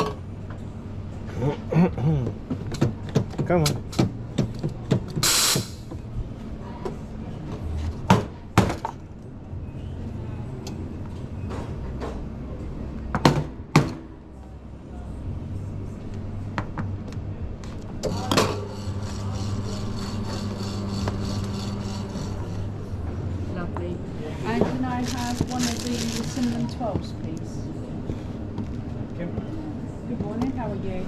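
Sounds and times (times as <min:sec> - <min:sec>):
coffee machine humming: 0:17.9 - 0:23.4.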